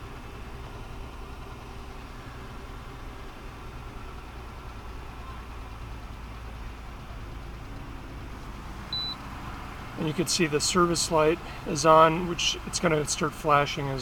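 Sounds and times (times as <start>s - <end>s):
misfiring car engine idling: 0.0s - 14.0s
short high beep: 8.9s - 9.2s.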